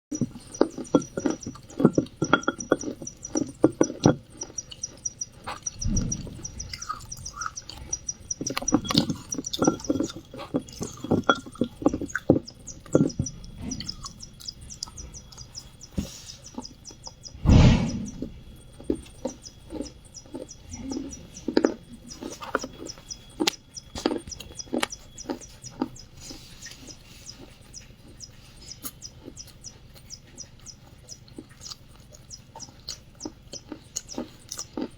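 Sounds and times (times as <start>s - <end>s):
wet mouth sounds: 0.1s - 17.1s
crunchy chewing of clay: 0.1s - 34.9s.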